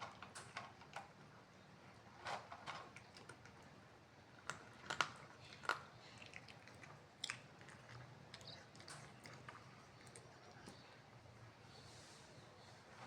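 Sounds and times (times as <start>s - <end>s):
cat chewing: 4.4s - 11.0s.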